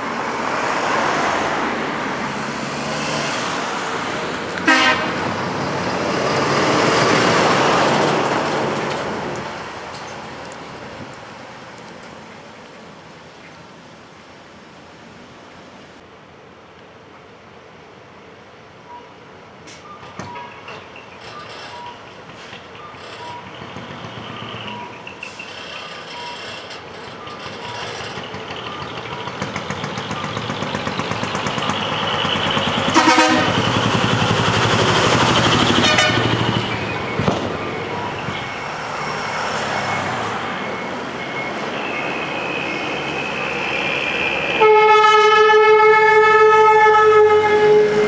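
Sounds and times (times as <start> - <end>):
truck engine passing: 0.0 - 11.8, 22.4 - 48.0
truck horn toots: 4.5 - 8.3, 31.3 - 48.0.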